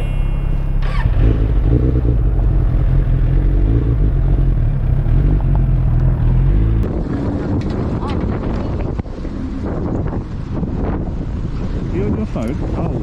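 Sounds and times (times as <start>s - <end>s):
motorcycle engine rumbling: 0.0s - 13.0s
wind noise on microphone: 5.3s - 13.0s.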